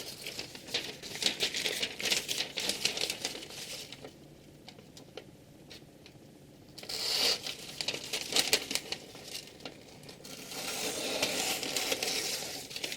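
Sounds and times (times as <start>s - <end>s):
crinkling and crackling clicks: 0.0s - 6.2s.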